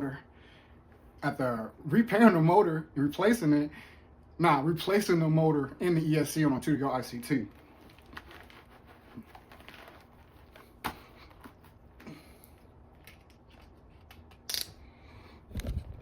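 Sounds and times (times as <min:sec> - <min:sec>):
handling clicks and rustles: 0:07.3 - 0:14.8
sharp click: 0:14.3 - 0:14.8.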